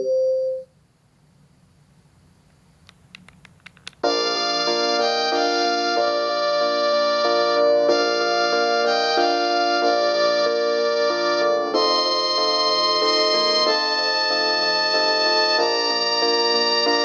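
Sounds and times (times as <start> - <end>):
faint clicks: 2.4 - 4.0.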